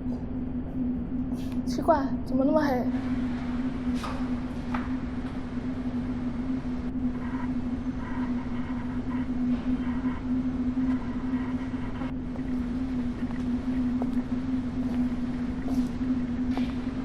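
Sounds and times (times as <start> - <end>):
elevator humming: 0.0 - 17.0.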